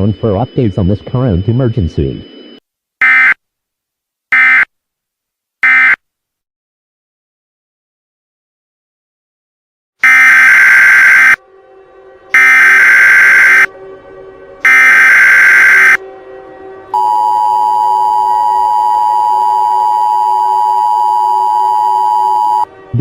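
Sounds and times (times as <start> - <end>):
harsh digital data buzz: 10.0 - 11.4, 12.4 - 13.7, 14.7 - 16.0
two-tone attention signal: 12.4 - 13.7, 14.7 - 16.0.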